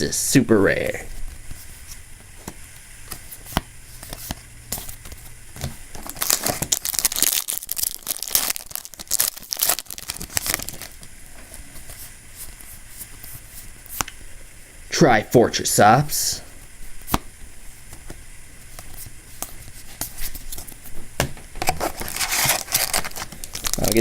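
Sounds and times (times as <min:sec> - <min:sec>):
foil wrapper tearing and crinkling: 0:05.9 - 0:11.1, 0:21.6 - 0:24.0.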